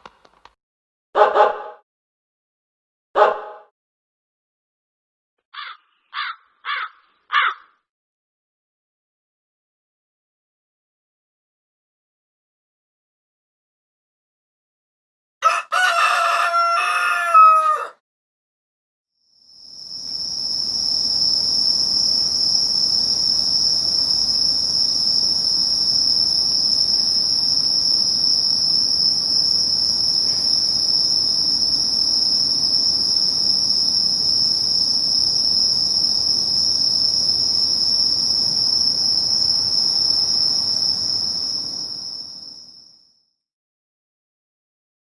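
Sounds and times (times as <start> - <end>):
insect chorus chirring: 19.4 - 43.1.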